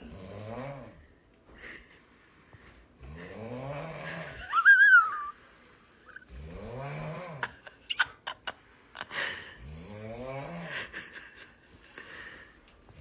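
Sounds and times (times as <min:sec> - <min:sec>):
snoring: 0:00.0 - 0:01.1, 0:03.0 - 0:04.4, 0:06.2 - 0:07.6, 0:09.5 - 0:10.9.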